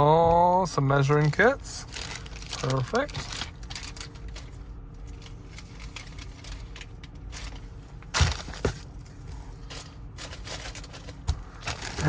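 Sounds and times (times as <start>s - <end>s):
plastic packaging crinkling: 1.8s - 8.8s, 9.7s - 12.0s.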